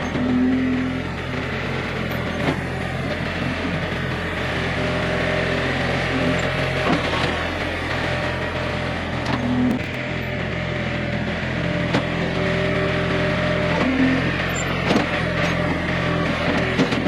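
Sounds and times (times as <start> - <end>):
garden tractor engine running: 0.0 - 17.0
machine clicks and knocks: 9.7 - 10.0.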